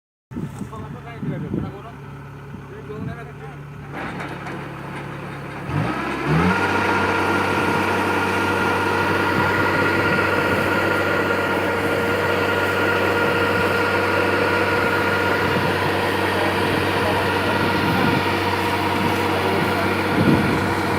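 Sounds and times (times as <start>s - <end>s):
combine harvester engine: 0.4s - 20.9s
high steady whine: 6.4s - 20.9s.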